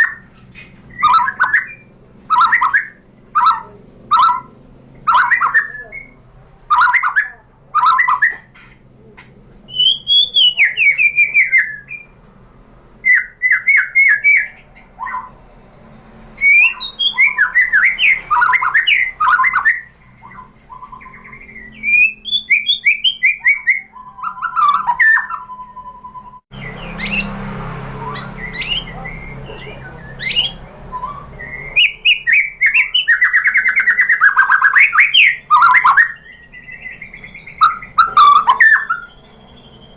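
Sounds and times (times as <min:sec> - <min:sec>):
songbird whistling and chirping: 0:00.0 - 0:08.8, 0:09.7 - 0:12.2, 0:13.0 - 0:15.4, 0:16.0 - 0:39.9.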